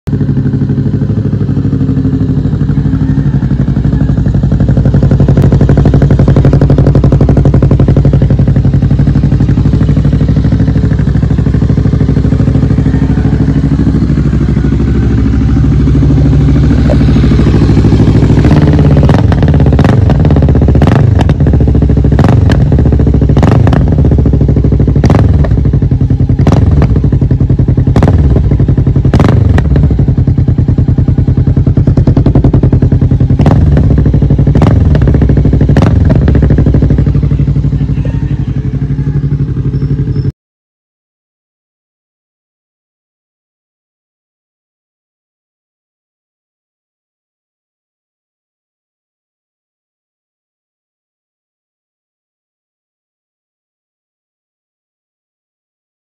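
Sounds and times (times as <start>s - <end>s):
motorcycle engine idling and revving: 0.0s - 40.4s
exhaust cracks: 14.7s - 30.4s.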